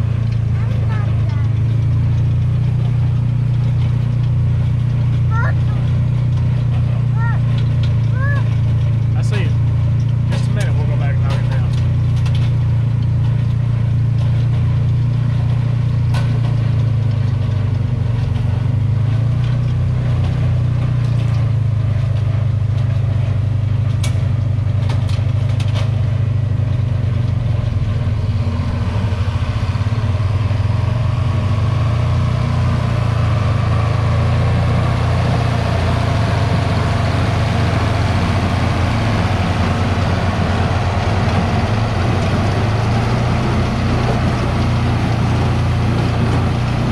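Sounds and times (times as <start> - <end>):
harsh clatter: 0.0 - 46.9
tractor diesel engine running: 0.0 - 46.9.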